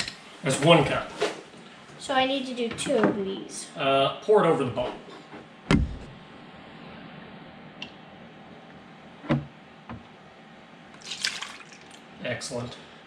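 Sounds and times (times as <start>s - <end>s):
milk pouring: 11.0s - 12.0s.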